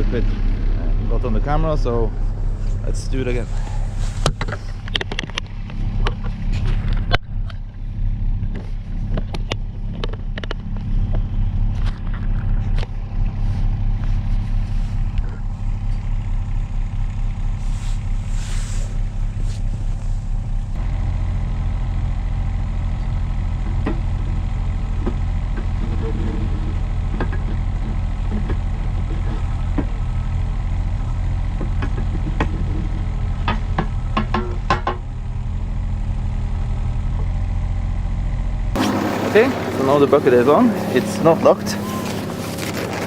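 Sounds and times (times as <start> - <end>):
diesel engine running: 0.0 - 43.0
brief hiss: 17.6 - 19.7
metal clanks and knocks: 31.6 - 35.1.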